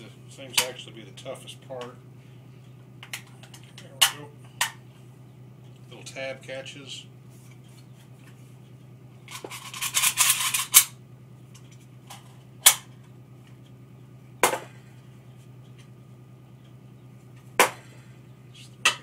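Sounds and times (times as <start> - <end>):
magazine parts rattling and clicking: 9.3 - 10.9.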